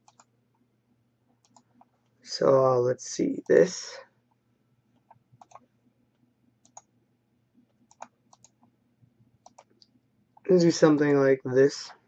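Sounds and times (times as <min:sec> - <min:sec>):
faint computer clicking: 0:00.0 - 0:00.6, 0:01.3 - 0:02.2, 0:03.3 - 0:03.6, 0:04.2 - 0:07.0, 0:07.6 - 0:08.8, 0:09.4 - 0:10.5.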